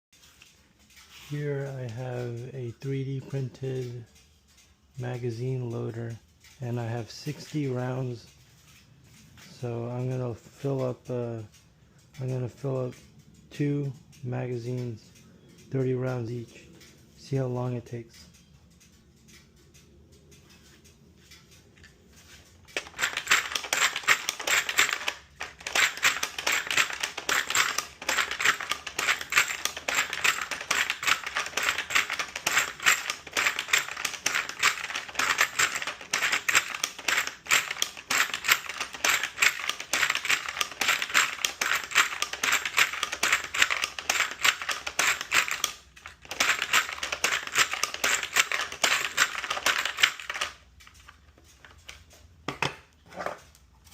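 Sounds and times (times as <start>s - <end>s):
cartridges clicking into magazine: 22.6s - 51.2s.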